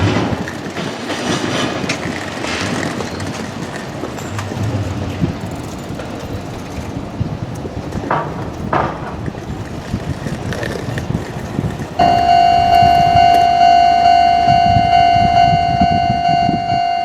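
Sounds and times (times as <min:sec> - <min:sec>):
train rolling on tracks: 0:00.0 - 0:17.0
wind on microphone: 0:00.0 - 0:17.0
wheel clicks: 0:01.9 - 0:08.6.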